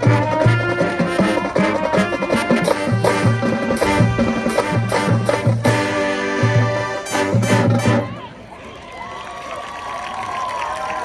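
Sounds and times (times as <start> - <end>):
brass chords: 0.0 - 8.2.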